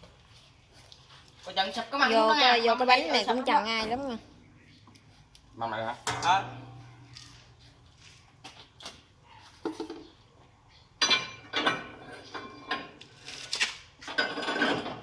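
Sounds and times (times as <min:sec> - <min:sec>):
sharp metal strikes: 0:06.0 - 0:07.0.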